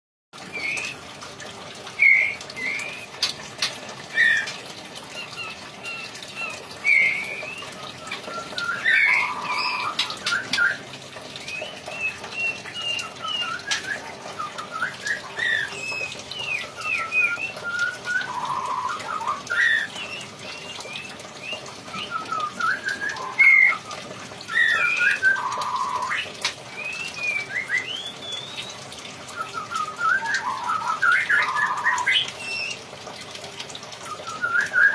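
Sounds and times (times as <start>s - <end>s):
songbird singing: 5.1s - 10.8s, 11.4s - 32.8s.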